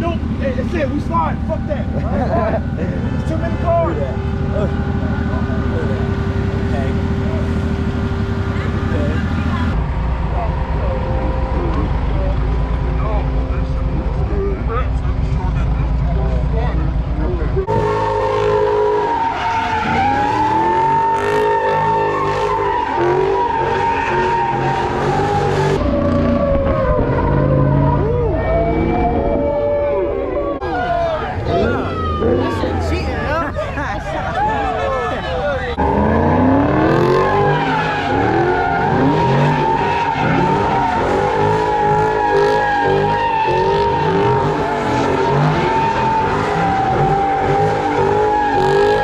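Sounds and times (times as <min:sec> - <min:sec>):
car engine revving: 0:00.0 - 0:49.0
tire squeal: 0:17.7 - 0:33.4, 0:34.0 - 0:49.0.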